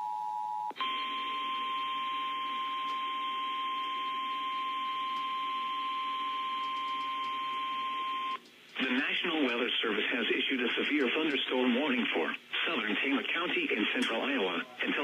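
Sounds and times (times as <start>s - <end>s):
steady warning alarm tone: 0.8s - 8.4s
radio hiss: 8.8s - 15.0s.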